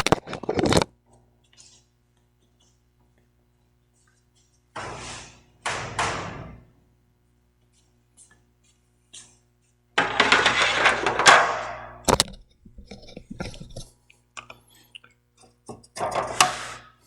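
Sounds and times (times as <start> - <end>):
hard objects clattering and scraping: 0.0 - 0.9, 10.0 - 13.9
rattle: 12.1 - 13.9.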